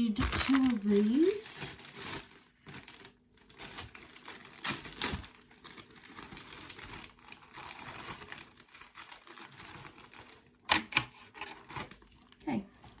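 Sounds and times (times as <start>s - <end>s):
rustling: 0.2s - 10.4s.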